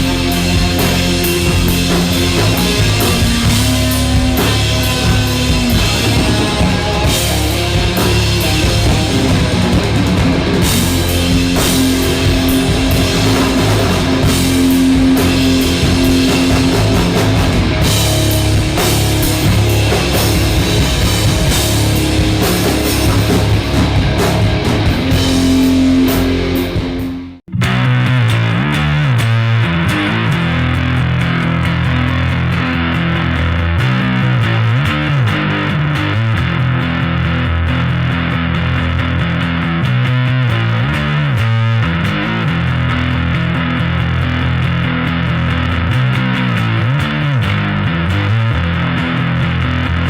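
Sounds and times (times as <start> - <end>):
rock music: 0.0 - 50.0.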